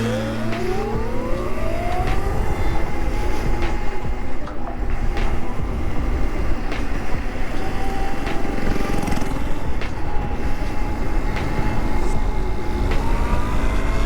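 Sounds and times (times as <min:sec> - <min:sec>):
electric motor whine: 0:00.0 - 0:14.0
wind rumble on microphone: 0:00.0 - 0:14.0.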